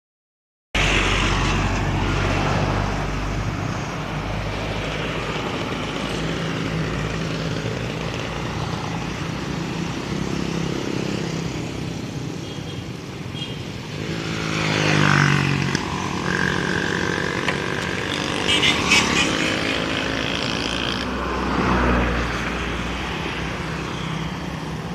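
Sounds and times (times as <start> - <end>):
vehicle engine passing close: 13.9 - 24.4.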